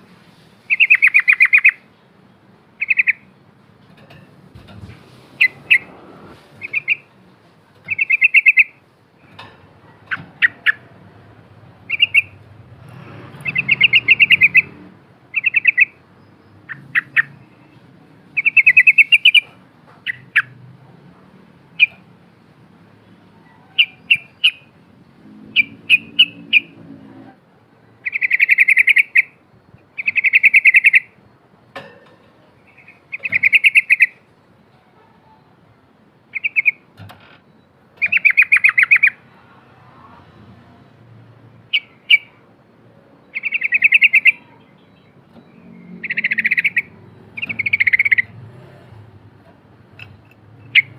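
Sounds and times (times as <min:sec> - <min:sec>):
bulbul singing chattering phrases: 0:11.9 - 0:12.4, 0:41.6 - 0:42.5, 0:43.3 - 0:48.5.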